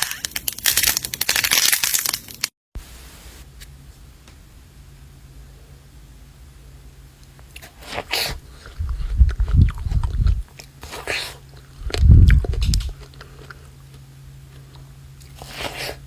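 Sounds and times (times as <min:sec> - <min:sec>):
slime squishing by hand: 0:11.8 - 0:13.0.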